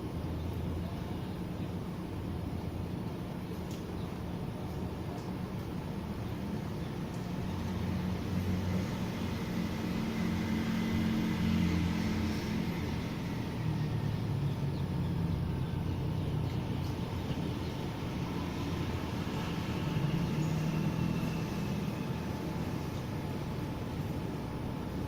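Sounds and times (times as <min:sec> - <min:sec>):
vehicle engine rumble passing: 0:07.1 - 0:25.0.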